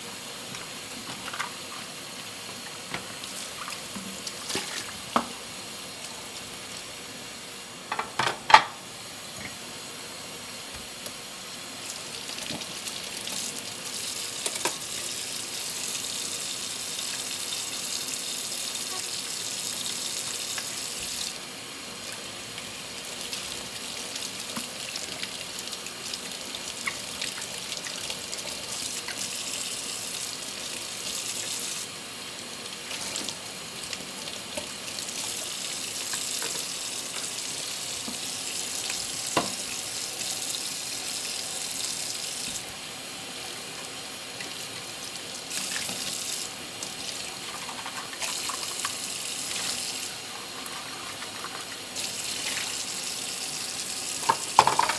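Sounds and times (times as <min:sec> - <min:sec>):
tap water running into sink: 0:00.4 - 0:07.0, 0:10.6 - 0:54.9
dishes clinking: 0:07.9 - 0:08.8, 0:54.2 - 0:54.9.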